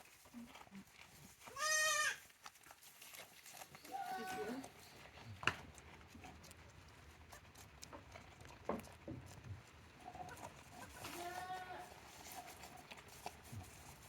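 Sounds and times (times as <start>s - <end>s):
goat bleat: 1.5s - 2.2s, 3.8s - 4.8s, 10.9s - 12.0s
light knocks and patter: 2.3s - 14.0s.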